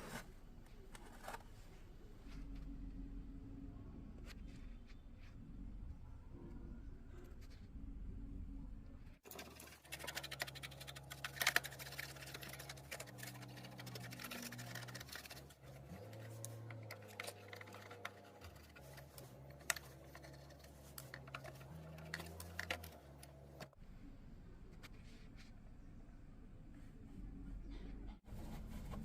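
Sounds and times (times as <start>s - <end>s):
hands handling cassette player parts: 9.3s - 23.8s.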